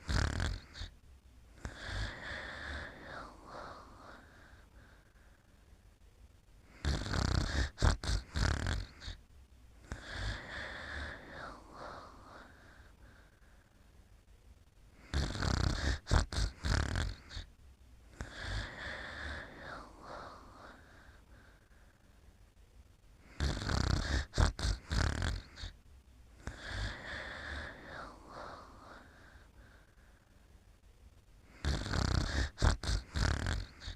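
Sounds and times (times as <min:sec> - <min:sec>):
person snoring: 0:00.0 - 0:00.9, 0:01.6 - 0:05.0, 0:06.6 - 0:09.2, 0:09.8 - 0:13.4, 0:15.0 - 0:17.5, 0:18.1 - 0:21.6, 0:23.2 - 0:25.8, 0:26.4 - 0:29.9, 0:31.4 - 0:33.9
soft breath: 0:00.6 - 0:06.0, 0:08.8 - 0:33.9.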